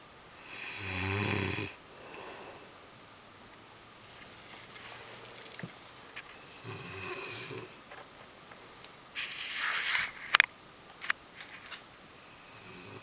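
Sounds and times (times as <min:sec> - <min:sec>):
man snoring: 0:00.4 - 0:02.7, 0:06.4 - 0:07.8, 0:12.2 - 0:13.0.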